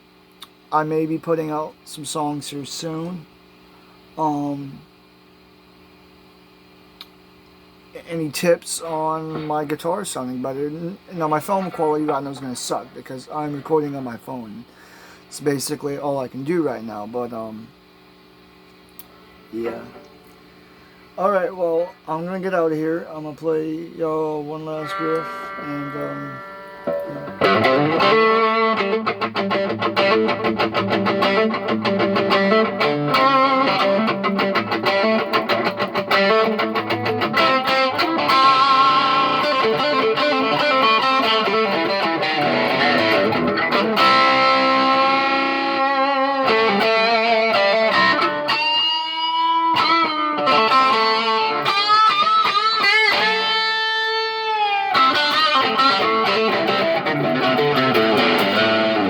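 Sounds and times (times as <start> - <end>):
electric guitar solo: 24.6 - 59.0.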